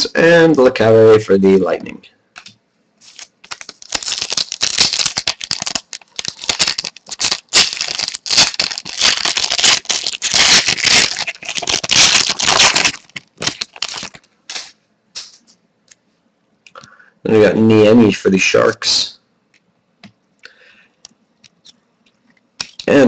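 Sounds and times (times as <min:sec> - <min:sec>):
plastic packaging crinkling: 0:02.4 - 0:15.5, 0:22.6 - 0:23.0.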